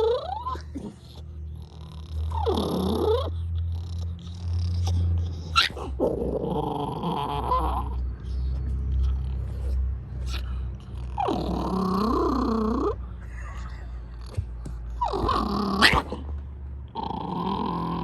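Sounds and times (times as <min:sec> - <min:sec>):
dog yelping: 0:00.0 - 0:01.2, 0:02.1 - 0:13.0, 0:15.0 - 0:16.3
dog growling whiny: 0:00.0 - 0:16.3, 0:16.9 - 0:18.0.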